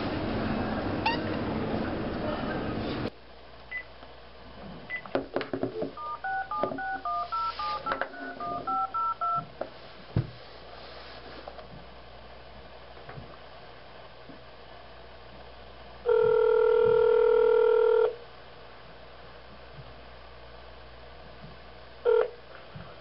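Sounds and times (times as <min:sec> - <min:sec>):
touch-tone dialing beeps: 0:06.0 - 0:09.4.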